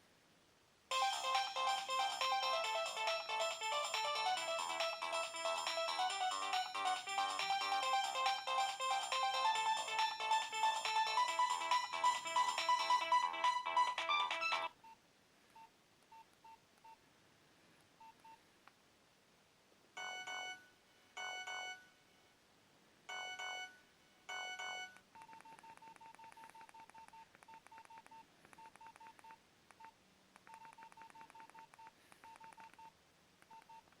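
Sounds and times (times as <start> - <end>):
phone ringtone melody: 0.9 - 14.7, 20.0 - 21.9, 23.1 - 25.0
faint electronic beeps: 1.9 - 17.0, 18.0 - 18.5, 19.9 - 22.4, 23.0 - 34.0.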